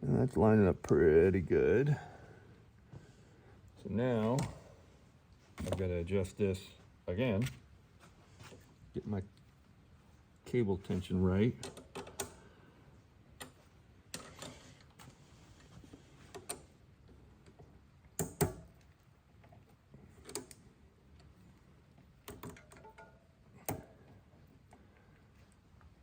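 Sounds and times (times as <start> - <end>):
tools clicking on bicycle parts: 11.6 - 12.4.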